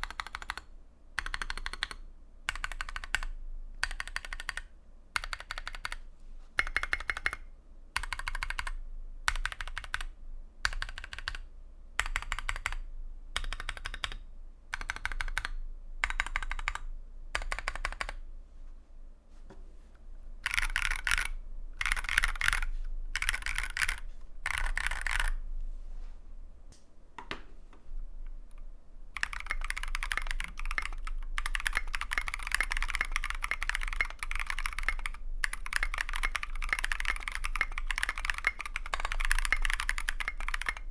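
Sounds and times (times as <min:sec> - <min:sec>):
typing on mechanical keyboard: 0:00.0 - 0:06.0, 0:06.6 - 0:07.4, 0:08.0 - 0:11.4, 0:12.0 - 0:18.2, 0:20.4 - 0:25.4, 0:29.2 - 0:40.9
keyboard keys pressed: 0:29.2 - 0:40.8.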